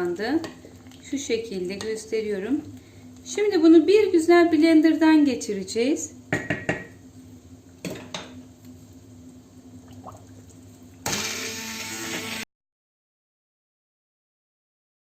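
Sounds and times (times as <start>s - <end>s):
cookware knocking: 6.3s - 6.9s
electric blender motor running: 11.0s - 12.5s.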